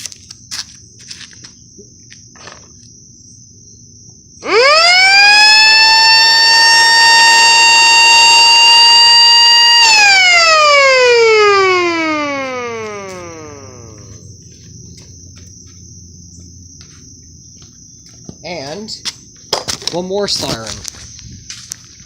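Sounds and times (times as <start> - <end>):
siren winding up and down: 4.4 - 14.4.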